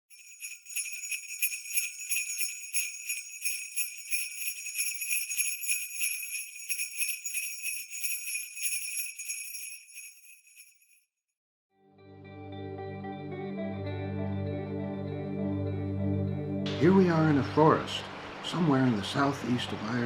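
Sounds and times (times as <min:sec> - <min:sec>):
small bells jingling: 0:00.0 - 0:11.0.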